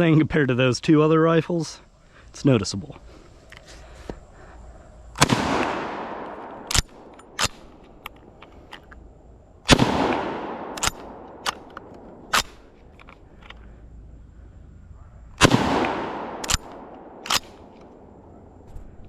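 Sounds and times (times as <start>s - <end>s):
rifle shots echoing: 5.2s - 8.1s, 9.6s - 12.8s, 15.4s - 18.2s
rifle bolt clicking: 5.2s - 9.0s, 10.1s - 13.6s, 15.8s - 18.0s.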